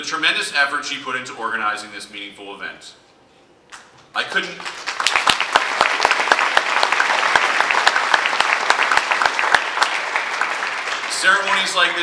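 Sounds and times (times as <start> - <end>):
audience applauding: 4.2 - 12.0.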